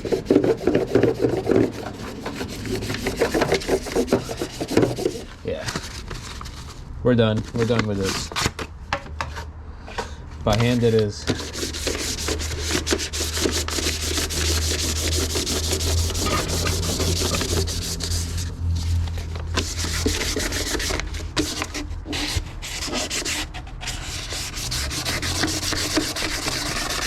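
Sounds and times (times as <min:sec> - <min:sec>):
sandpaper rubbing on sheet metal: 0:00.0 - 0:06.2, 0:10.7 - 0:27.0
low steady hum: 0:10.7 - 0:22.0.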